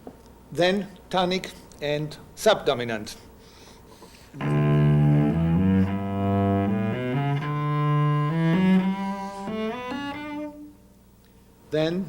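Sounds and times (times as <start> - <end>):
solo cello bowing a scale: 4.4 - 10.8.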